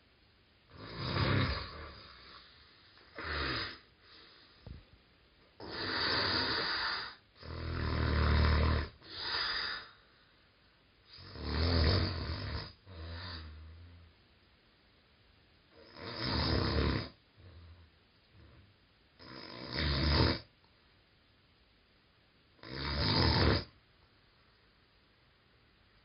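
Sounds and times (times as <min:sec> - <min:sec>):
person snoring: 0:00.7 - 0:04.6, 0:05.6 - 0:10.0, 0:11.1 - 0:14.0, 0:15.7 - 0:17.8, 0:19.2 - 0:20.5, 0:22.6 - 0:23.8.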